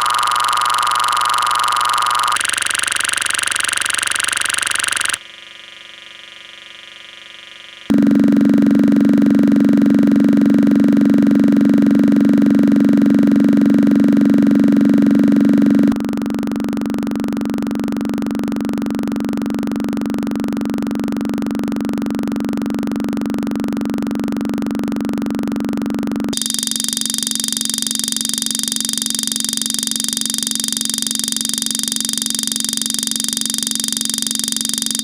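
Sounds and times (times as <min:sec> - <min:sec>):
steady buzzing tone: 0:00.0 - 0:05.2, 0:05.8 - 0:35.0.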